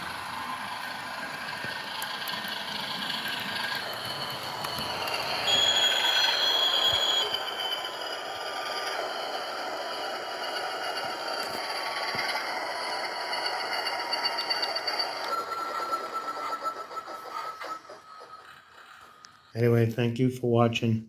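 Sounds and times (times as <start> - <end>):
model train motor running on track: 0.0 - 19.9.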